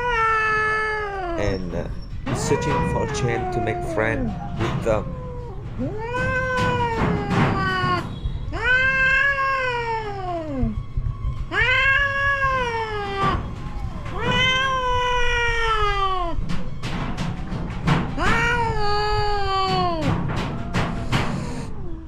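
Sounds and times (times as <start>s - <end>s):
cat yowling: 0.0s - 10.8s, 11.5s - 16.6s, 17.8s - 22.0s.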